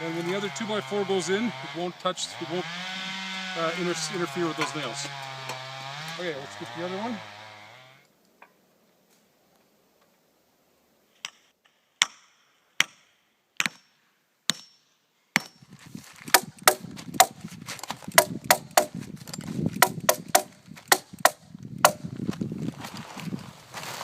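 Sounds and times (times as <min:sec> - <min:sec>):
hammer striking nails in wood: 0:15.4 - 0:15.6, 0:16.3 - 0:17.4, 0:18.1 - 0:22.0.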